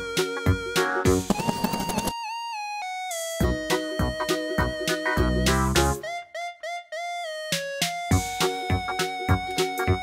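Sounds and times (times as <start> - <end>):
music with drum beat: 0.0 - 2.1, 8.1 - 10.0.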